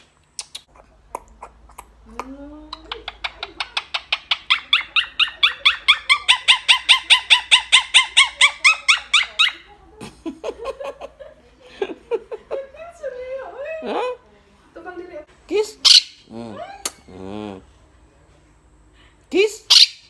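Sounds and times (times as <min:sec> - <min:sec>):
parrot chattering in sharp chirps: 0:02.7 - 0:09.7, 0:15.7 - 0:16.3, 0:19.6 - 0:20.0.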